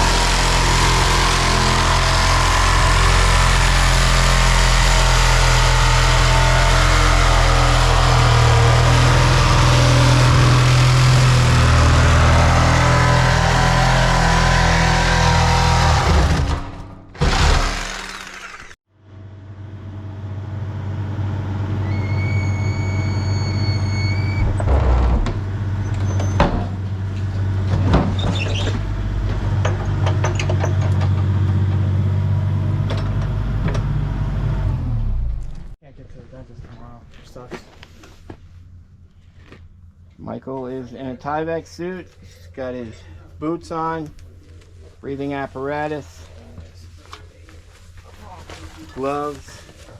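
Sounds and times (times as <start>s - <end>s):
loud harsh noise: 0.0s - 16.6s
engine running: 0.0s - 35.8s
brief high whine: 21.8s - 24.5s.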